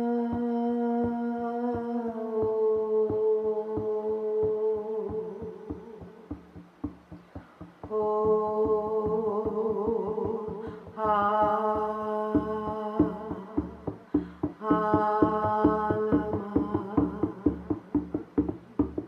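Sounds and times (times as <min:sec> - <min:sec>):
hand drum beat: 0:00.0 - 0:19.0
person singing long notes: 0:00.0 - 0:19.0.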